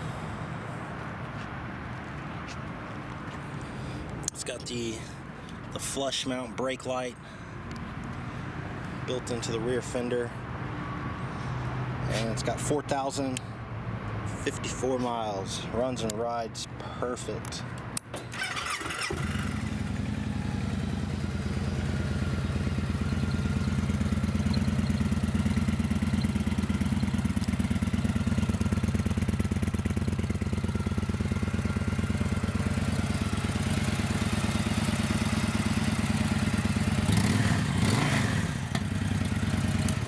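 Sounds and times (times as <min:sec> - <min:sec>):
motorcycle engine starting and idling: 0:18.2 - 0:40.0.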